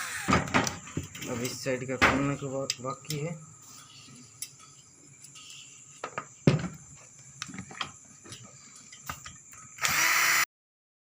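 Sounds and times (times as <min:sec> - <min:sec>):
power screwdriver running: 0:00.0 - 0:00.3, 0:09.8 - 0:10.5.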